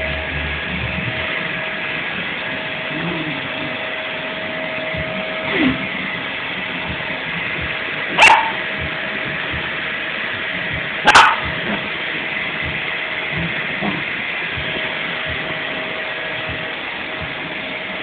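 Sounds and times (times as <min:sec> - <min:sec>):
vacuum cleaner running: 0:00.0 - 0:18.0
dog barking: 0:08.1 - 0:08.6, 0:11.0 - 0:11.8.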